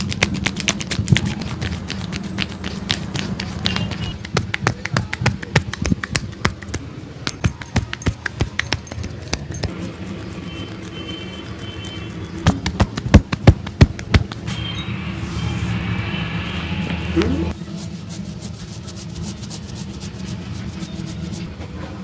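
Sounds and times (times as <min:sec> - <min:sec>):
hands slapping and tapping: 0:00.0 - 0:09.8, 0:12.4 - 0:14.5.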